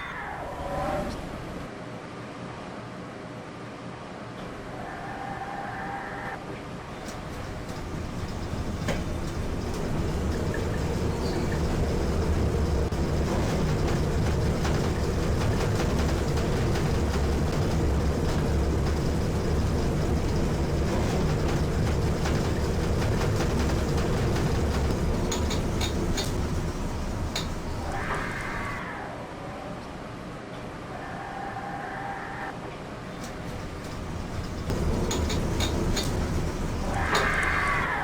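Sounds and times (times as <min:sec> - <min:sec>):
lift car rumbling in shaft: 0:04.4 - 0:29.0, 0:33.1 - 0:38.0.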